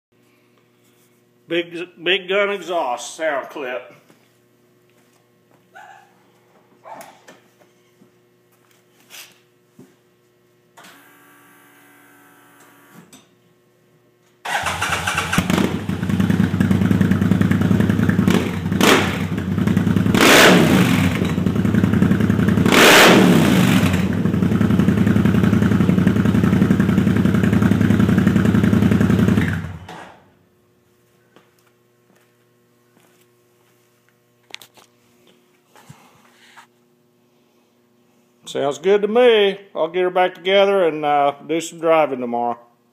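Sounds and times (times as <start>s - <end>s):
engine revving: 14.5s - 16.6s, 17.4s - 21.5s, 22.5s - 24.5s
engine starting and idling: 14.5s - 19.4s.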